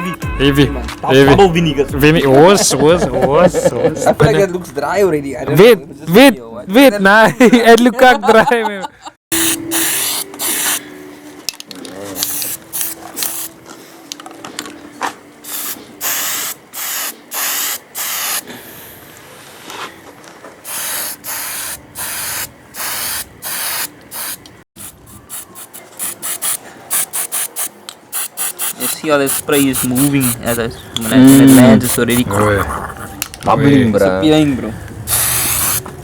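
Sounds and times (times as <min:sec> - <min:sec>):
spray paint hissing bursts: 0:09.3 - 0:10.8, 0:12.2 - 0:13.6, 0:15.4 - 0:18.5, 0:20.6 - 0:32.3, 0:35.1 - 0:35.9.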